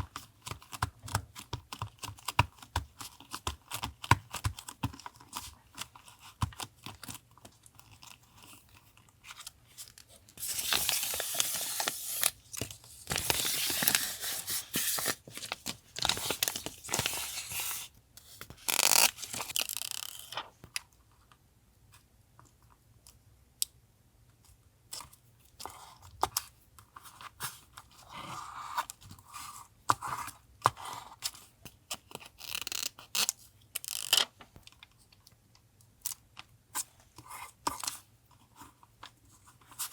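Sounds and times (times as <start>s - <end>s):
paper tearing: 18.6s - 20.4s.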